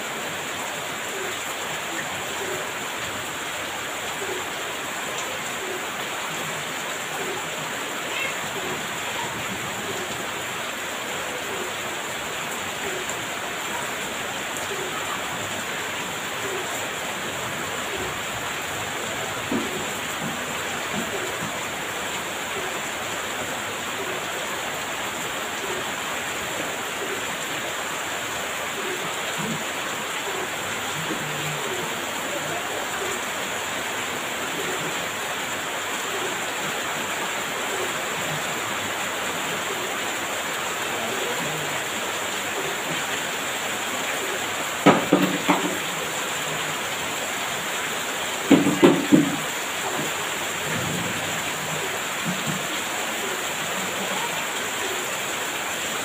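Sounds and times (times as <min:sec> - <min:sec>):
heavy rain pouring: 0:00.0 - 0:56.0
raindrops tapping: 0:18.8 - 0:22.3, 0:44.8 - 0:46.7, 0:48.4 - 0:52.9.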